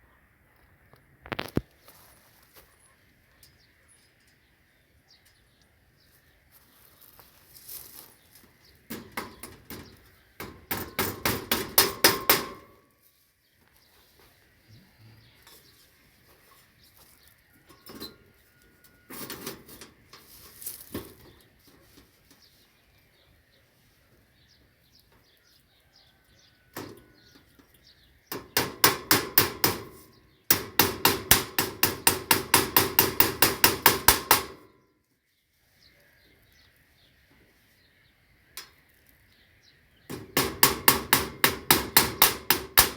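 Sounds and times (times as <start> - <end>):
hammer striking nail: 8.9 - 12.7, 28.3 - 34.6, 40.1 - 42.9.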